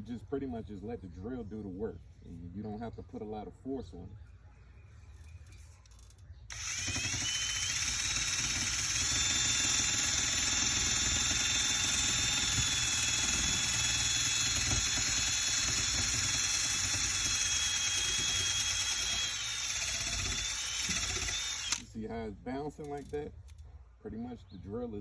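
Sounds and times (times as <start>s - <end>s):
power drill sanding metal: 6.5s - 21.9s.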